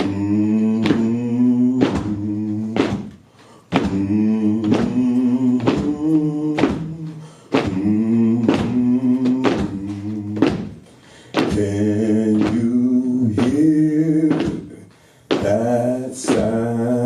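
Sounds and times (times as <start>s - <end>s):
heavy thump: 1.8s - 14.7s.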